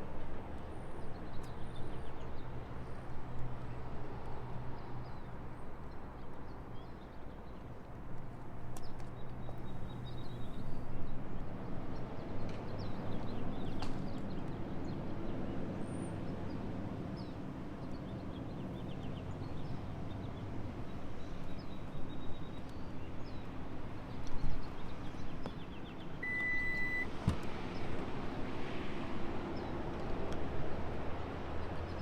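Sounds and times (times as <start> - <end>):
short electronic beep: 26.2 - 27.1.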